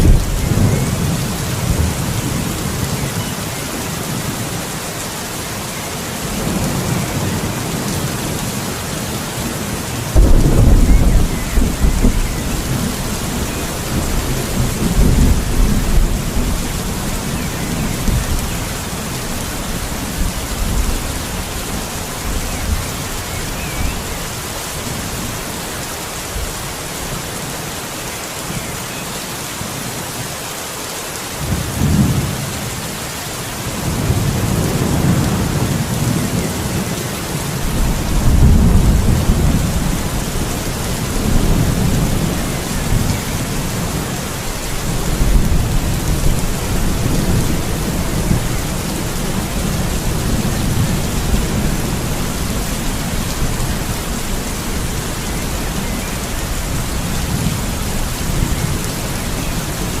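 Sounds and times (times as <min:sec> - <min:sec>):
rolling thunder: 0:00.0 - 0:02.8, 0:10.1 - 0:18.6, 0:37.7 - 0:58.9
heavy rain hiss: 0:00.0 - 1:00.0.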